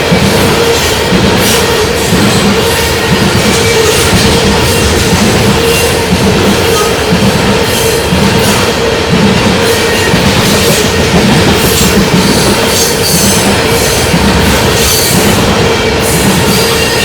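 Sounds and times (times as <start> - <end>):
freight train rumbling past: 0.0 - 17.0
train wheels clacking: 0.0 - 17.0.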